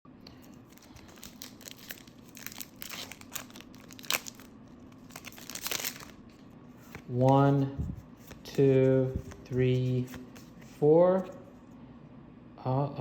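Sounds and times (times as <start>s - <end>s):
foil wrapper crinkling and tearing: 0.4s - 6.4s.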